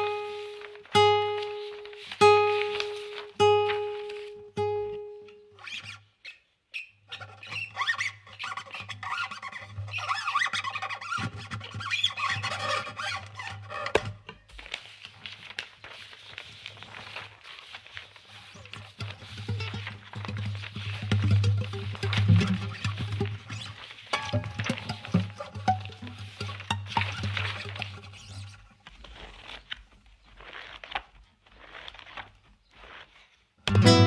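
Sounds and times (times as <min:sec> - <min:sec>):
crackling clicks and rustles: 0:00.0 - 0:34.0
held guitar note: 0:21.0 - 0:27.8, 0:33.7 - 0:34.0.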